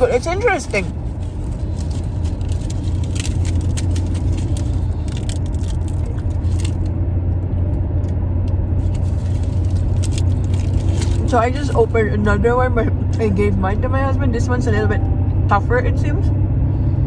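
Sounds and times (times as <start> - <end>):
faint clicks and rustles: 0.0 - 7.0, 7.6 - 11.7
road rumble inside car: 0.0 - 17.0.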